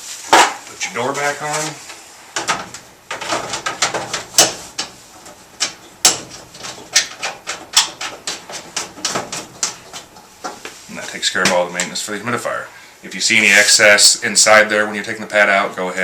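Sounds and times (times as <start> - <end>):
clicks taps and knocks: 2.4 - 10.8.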